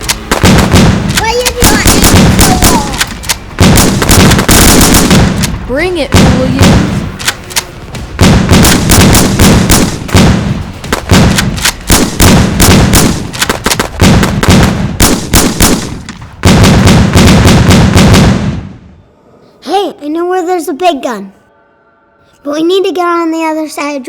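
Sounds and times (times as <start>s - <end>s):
rapid machine gun fire: 0.0s - 7.2s, 8.2s - 18.8s.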